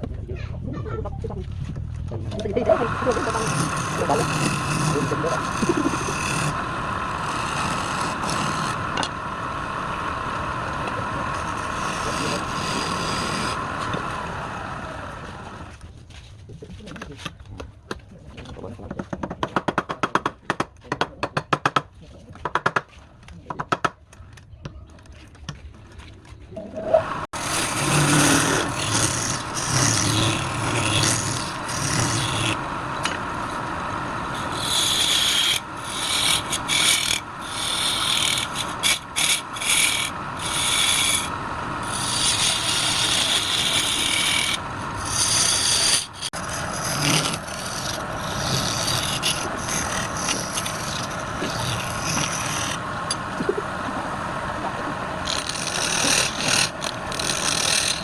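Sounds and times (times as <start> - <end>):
tool scraping spinning wood: 2.3 - 15.8, 27.0 - 58.0
tool rasping against wood: 2.9 - 9.2, 10.8 - 14.1, 27.3 - 32.6, 34.3 - 52.8, 55.2 - 58.0.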